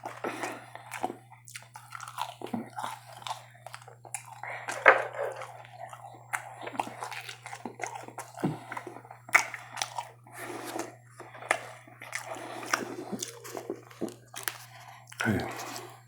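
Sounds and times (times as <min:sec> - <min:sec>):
person chewing food: 0:00.0 - 0:16.0.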